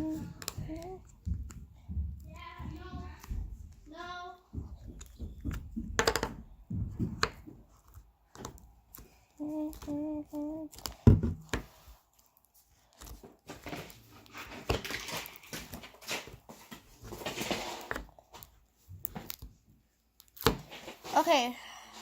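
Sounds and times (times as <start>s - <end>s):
girl humming: 0.0s - 1.1s, 9.3s - 10.9s
rustling: 6.8s - 22.0s.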